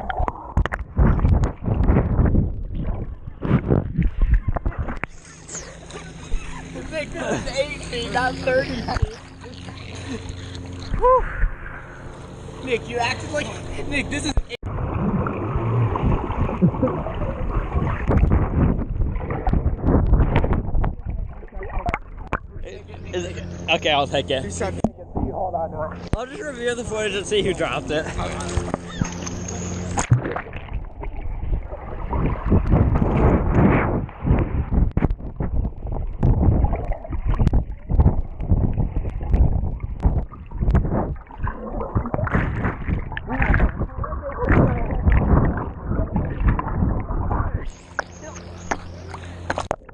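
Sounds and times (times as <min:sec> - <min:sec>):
underwater churning and bubbling: 0:00.0 - 0:14.0, 0:14.6 - 0:49.9
muffled water splashing: 0:00.0 - 0:49.9.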